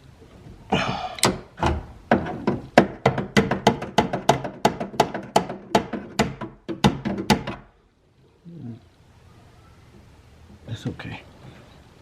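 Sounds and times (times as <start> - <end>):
sharp taps on metal: 0.8 - 7.7.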